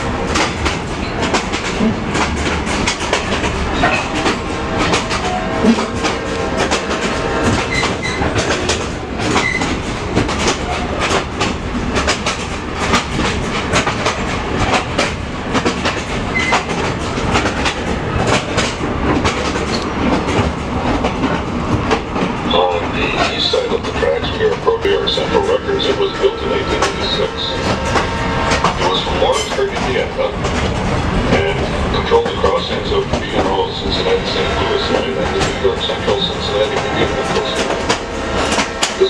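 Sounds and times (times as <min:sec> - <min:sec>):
wheels clicking over rails: 0:00.0 - 0:25.8
train rumbling: 0:00.0 - 0:39.0.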